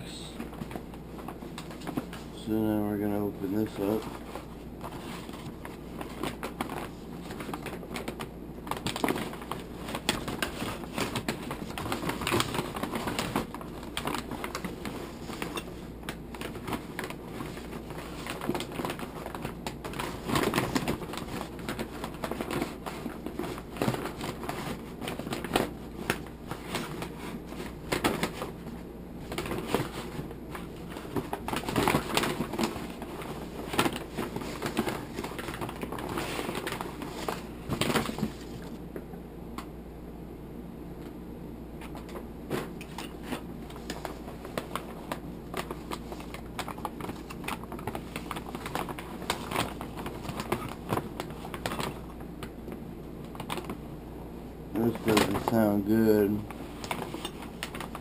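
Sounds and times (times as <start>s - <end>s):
packaging crinkling: 3.8s - 28.6s, 29.2s - 38.8s, 42.5s - 52.1s.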